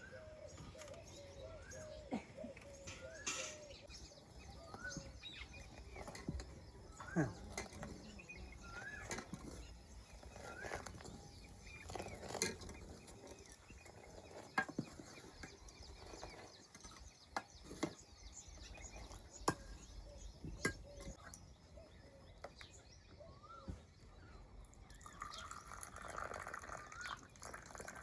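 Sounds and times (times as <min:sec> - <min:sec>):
small birds chirping: 0:00.0 - 0:28.0
sharp knocks and clinks: 0:20.4 - 0:21.5.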